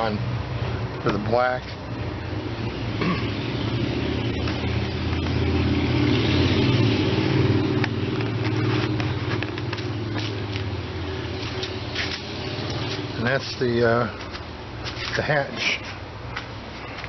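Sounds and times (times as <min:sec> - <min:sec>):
low motor hum: 0:00.3 - 0:13.3.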